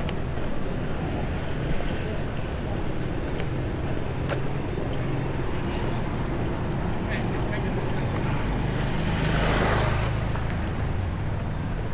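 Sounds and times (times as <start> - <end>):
street traffic rumble: 0.0 - 11.9.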